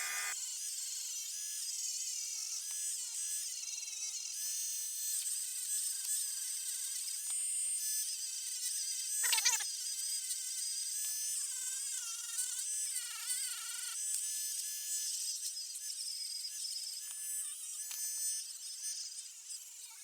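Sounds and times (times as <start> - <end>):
rotary tool whining: 0.0 - 0.4.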